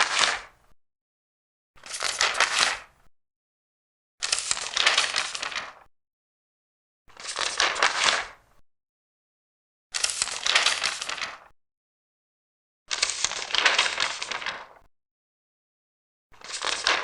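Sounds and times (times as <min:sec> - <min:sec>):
paper pages turning: 0:01.8 - 0:02.9, 0:04.2 - 0:05.9, 0:07.2 - 0:08.4, 0:10.0 - 0:11.5, 0:12.9 - 0:14.8, 0:16.4 - 0:17.0.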